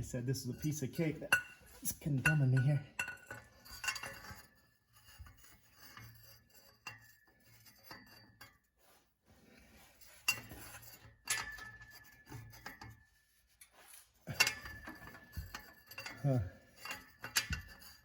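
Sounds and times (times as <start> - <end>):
tools rubbing on metal: 0.0 - 18.0
metal tools clinking: 14.3 - 18.0.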